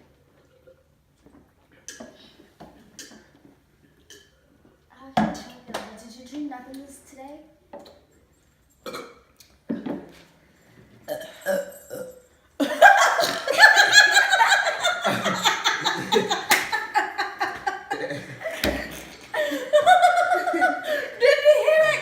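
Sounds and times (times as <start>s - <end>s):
person burping: 8.8s - 9.2s, 11.1s - 12.3s
people laughing loudly: 12.6s - 22.0s.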